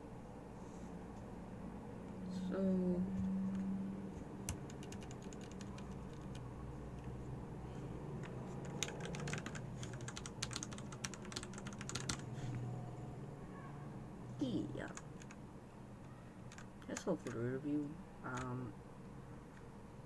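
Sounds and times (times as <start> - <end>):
mechanical keyboard typing: 4.4 - 7.1, 8.2 - 12.4, 14.8 - 15.4, 16.5 - 17.4.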